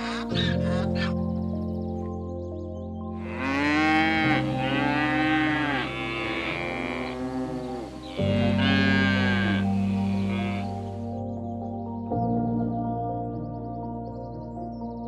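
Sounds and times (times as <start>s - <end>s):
background music with low notes: 0.0s - 15.0s
rising and falling animal calls: 3.2s - 11.1s.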